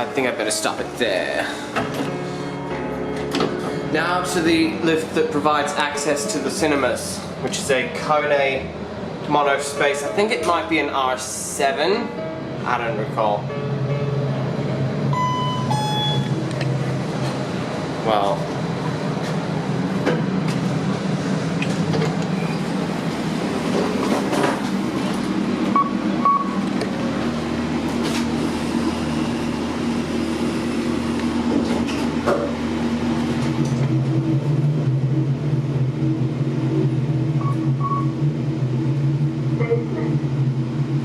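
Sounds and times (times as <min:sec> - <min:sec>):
lift travel hum: 0:00.0 - 0:12.8, 0:13.4 - 0:41.0
high electronic double beep: 0:15.2 - 0:16.4.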